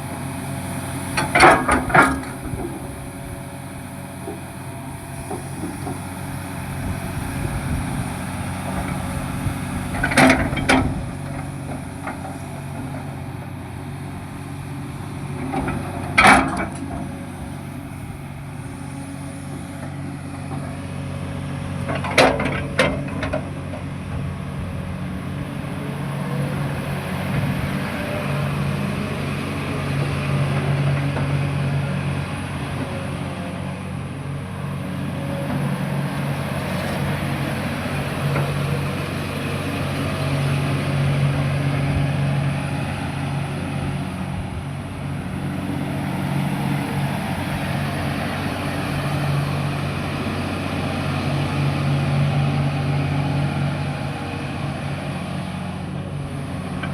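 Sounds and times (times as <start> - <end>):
excavator diesel engine running: 0.0 - 56.9.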